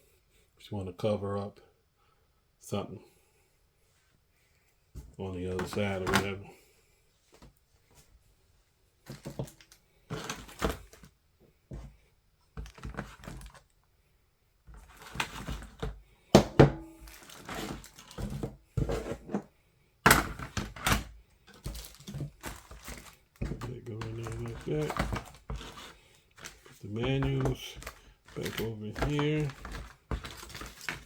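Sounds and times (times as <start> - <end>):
knocks and thunks of plastic parts: 5.0 - 6.3, 9.0 - 11.1, 12.6 - 13.6, 14.7 - 31.0
packaging rustling: 12.6 - 13.7, 17.0 - 18.5, 20.2 - 31.0.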